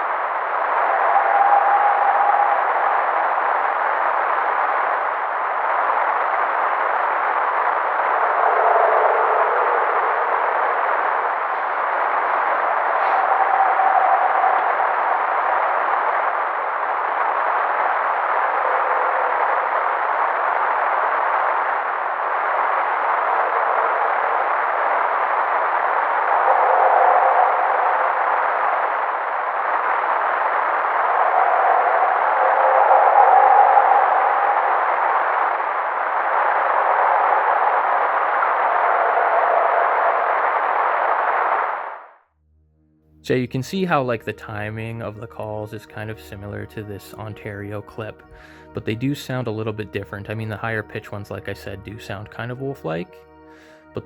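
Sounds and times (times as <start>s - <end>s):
steady rushing noise: 0.0s - 42.2s
howl-like animal calls: 0.5s - 4.0s, 8.0s - 16.8s, 26.3s - 28.9s, 30.9s - 35.7s.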